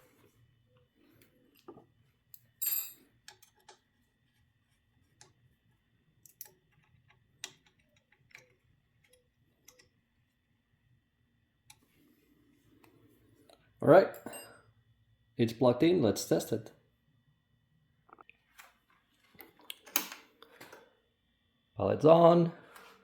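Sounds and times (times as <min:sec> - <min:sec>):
ringing metal clink: 0:02.6 - 0:03.0
faint clicks and metallic taps: 0:04.7 - 0:10.0.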